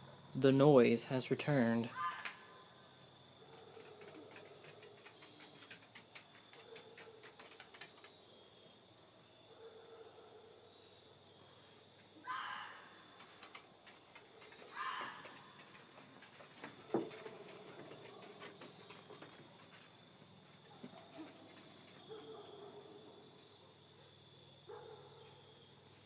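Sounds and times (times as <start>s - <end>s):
insect chirring: 0.0s - 26.0s.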